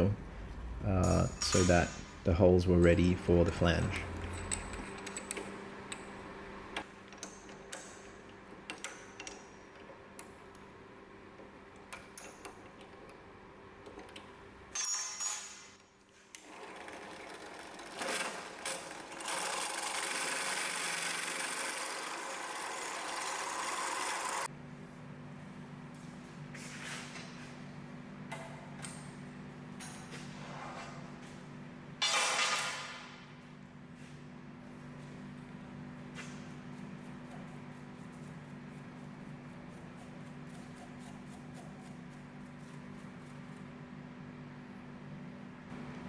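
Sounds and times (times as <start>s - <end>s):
power drill running: 19.2s - 24.5s.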